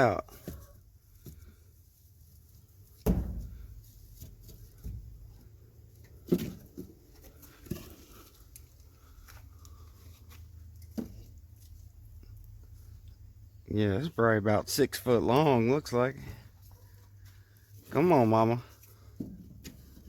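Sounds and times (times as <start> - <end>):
dull knocks and bumps: 2.9 - 8.0, 19.0 - 20.0.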